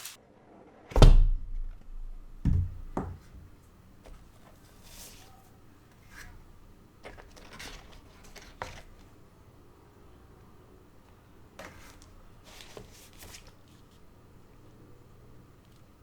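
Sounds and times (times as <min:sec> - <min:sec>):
soft knock: 0:01.0 - 0:03.5.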